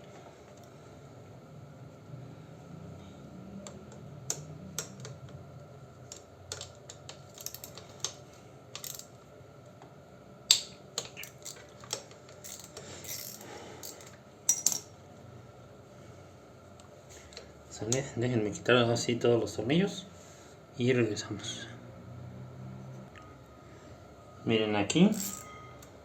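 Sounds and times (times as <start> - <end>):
hand tool clinking on metal screws: 25.1 - 25.5.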